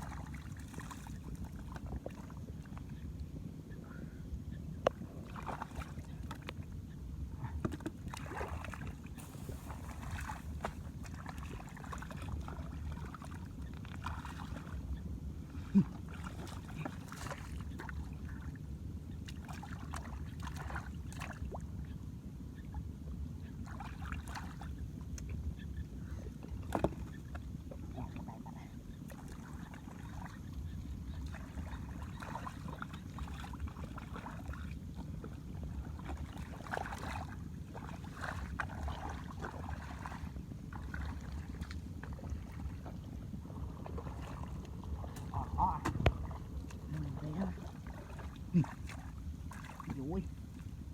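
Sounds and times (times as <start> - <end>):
shallow water splashing: 0.0 - 2.8, 5.2 - 6.4, 7.9 - 18.6, 29.0 - 50.9
wind on microphone: 9.2 - 11.8, 40.0 - 48.6.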